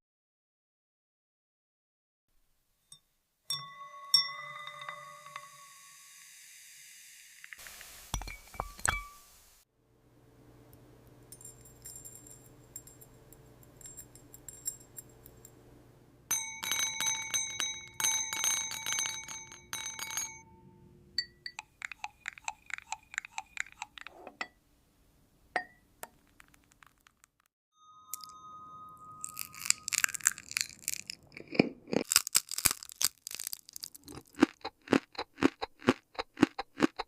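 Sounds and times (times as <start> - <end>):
glass clinking with bell-like ringing: 2.9 - 6.0, 8.2 - 9.2, 11.3 - 15.6, 16.3 - 22.6, 27.8 - 30.5.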